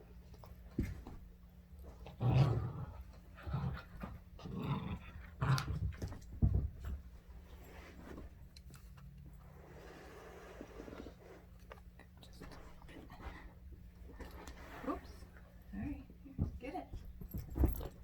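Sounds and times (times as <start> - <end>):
dog growling in play: 2.0 - 6.1.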